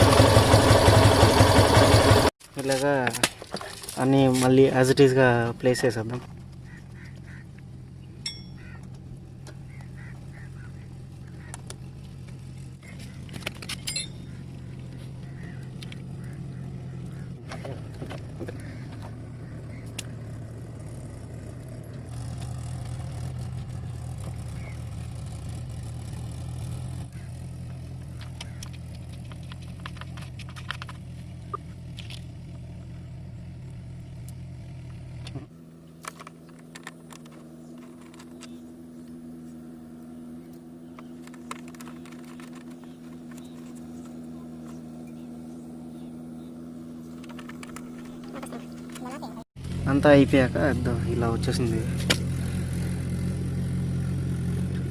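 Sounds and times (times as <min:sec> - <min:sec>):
motorcycle engine running: 0:00.0 - 0:54.9
metal clicks and clatter: 0:11.5 - 0:14.4, 0:28.1 - 0:32.3, 0:36.0 - 0:38.6, 0:41.1 - 0:44.1, 0:47.1 - 0:49.3
higher-pitched hum: 0:34.2 - 0:54.9.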